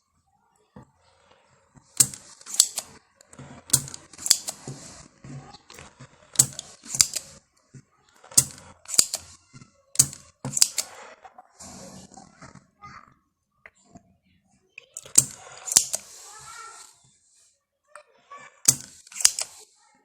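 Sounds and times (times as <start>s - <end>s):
sharp clicks with high hiss: 18.7s - 19.6s.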